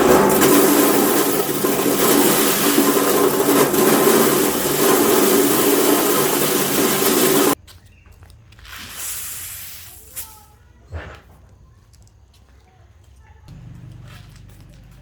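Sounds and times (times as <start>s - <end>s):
motorised machine running: 0.0s - 7.6s.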